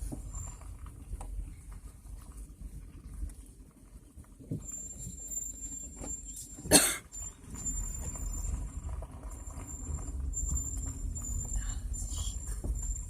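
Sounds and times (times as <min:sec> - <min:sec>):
low rumble: 0:07.2 - 0:13.0.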